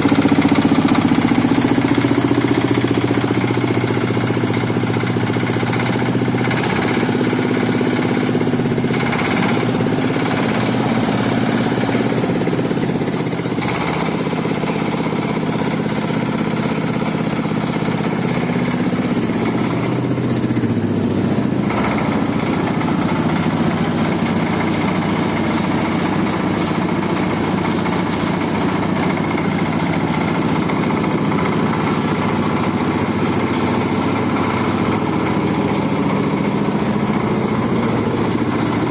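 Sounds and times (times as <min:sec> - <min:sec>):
sorting machine motor drone: 0:00.0 - 0:38.9.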